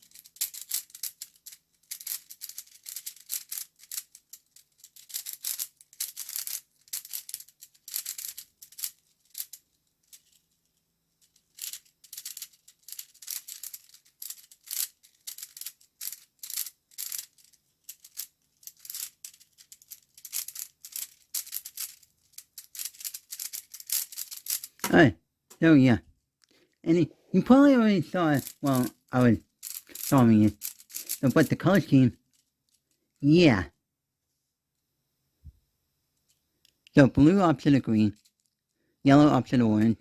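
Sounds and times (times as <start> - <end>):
puzzle cube clicking turns: 0.0 - 10.4, 11.4 - 25.0, 28.2 - 31.8.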